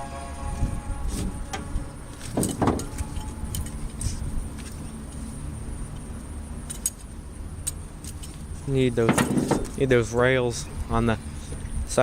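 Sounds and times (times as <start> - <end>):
metal scrape: 0.0 - 4.9
steady low rumble: 0.0 - 12.0
metal hooks and buckles clinking: 2.1 - 4.9, 5.9 - 9.8.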